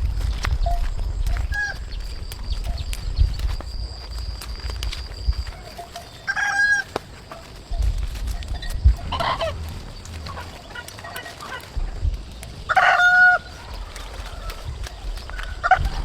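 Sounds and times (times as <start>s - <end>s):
low rumble: 0.0s - 5.6s
chickens calling: 0.6s - 16.0s.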